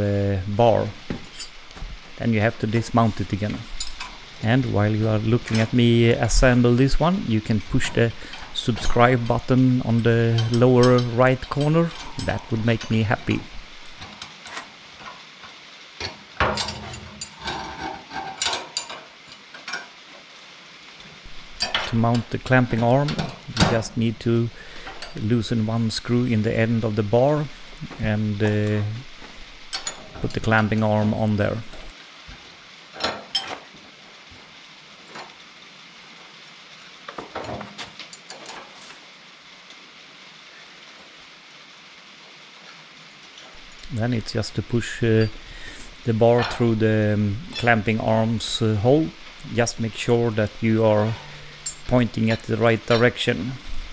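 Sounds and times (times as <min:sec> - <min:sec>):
steady hiss: 0:00.0 - 0:53.9
metal clinks and clunks: 0:03.5 - 0:04.3, 0:07.8 - 0:15.2, 0:16.0 - 0:19.9, 0:21.3 - 0:24.0, 0:29.6 - 0:31.1, 0:33.0 - 0:33.6, 0:51.1 - 0:53.2.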